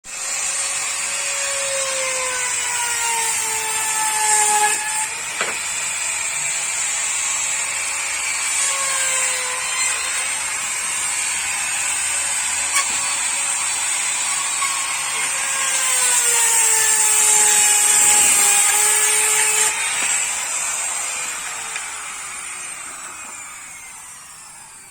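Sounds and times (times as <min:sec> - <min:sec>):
power tool motor on wood: 0:00.1 - 0:24.9.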